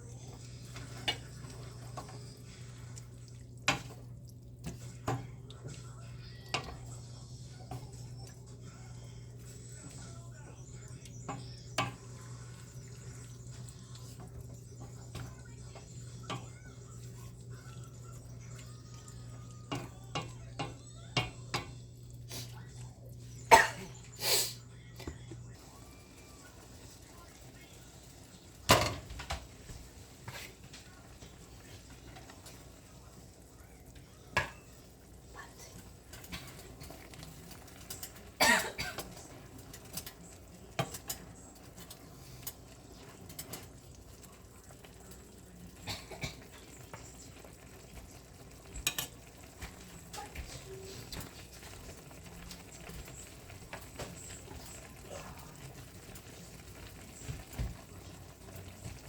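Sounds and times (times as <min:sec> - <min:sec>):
utensils knocking against pan: 0:11.3 - 0:12.2, 0:19.6 - 0:21.8, 0:28.7 - 0:29.4, 0:48.8 - 0:49.2.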